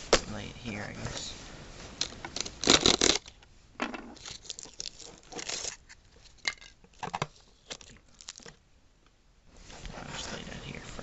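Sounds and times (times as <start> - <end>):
tape pulled off: 2.0 - 3.4
cardboard packaging crinkling: 4.2 - 8.6.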